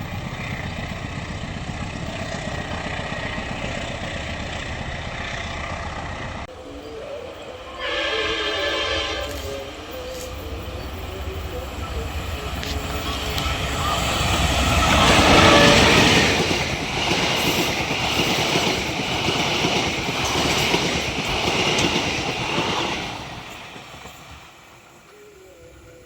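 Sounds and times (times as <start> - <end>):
train wheels clattering over rails: 9.2 - 25.2.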